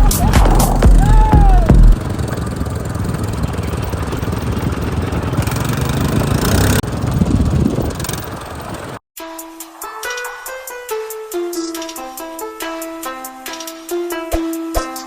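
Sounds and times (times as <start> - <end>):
motorcycle engine pulsing: 0.0 - 9.0
plucked music notes: 9.2 - 15.0.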